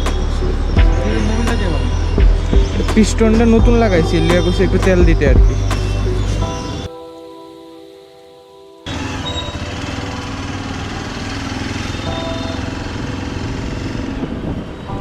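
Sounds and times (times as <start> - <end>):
faint music: 0.0 - 15.0
motorcycle engine running: 8.9 - 14.8
wind noise on microphone: 13.3 - 15.0.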